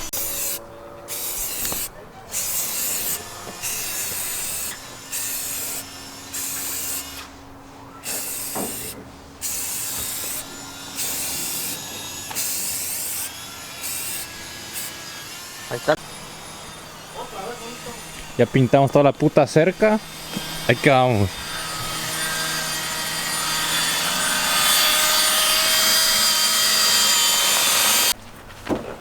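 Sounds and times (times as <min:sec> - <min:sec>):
spray paint can hissing: 0:00.1 - 0:07.3, 0:08.0 - 0:14.9.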